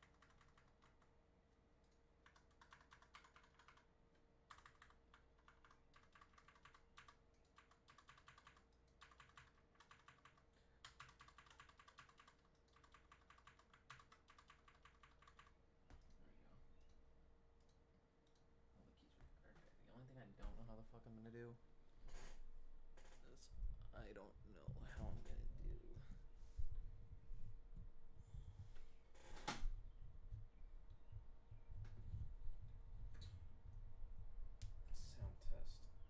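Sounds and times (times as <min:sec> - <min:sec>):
typing on mechanical keyboard: 0:00.0 - 0:01.2, 0:01.8 - 0:16.2
faint steady hum: 0:00.0 - 0:36.0.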